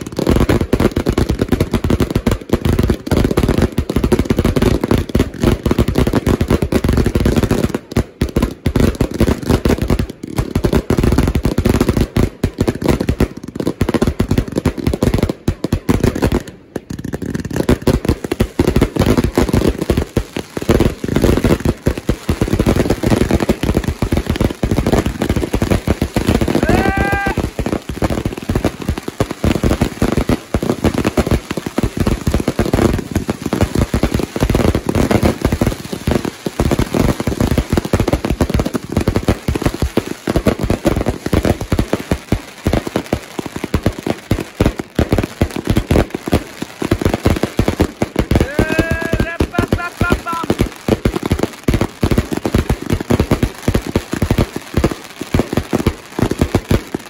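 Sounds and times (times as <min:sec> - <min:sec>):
fireworks banging and crackling: 0:00.0 - 0:57.0
rising whoop-like call: 0:26.6 - 0:27.5, 0:48.4 - 0:50.5.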